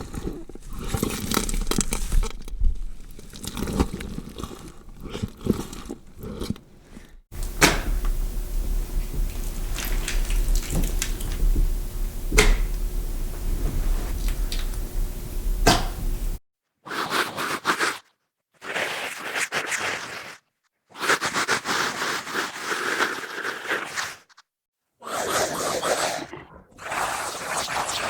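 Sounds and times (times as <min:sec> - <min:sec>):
steady low hum: 0:00.0 - 0:16.4
raw meat wet slaps: 0:07.4 - 0:11.5.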